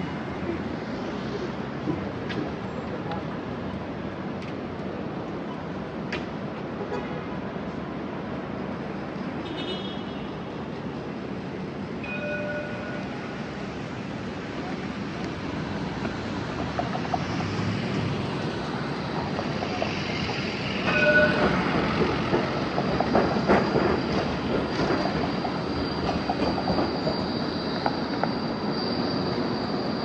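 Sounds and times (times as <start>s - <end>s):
train rumbling: 10.4s - 30.0s
high squeal from wheels: 12.0s - 14.7s, 15.4s - 30.0s.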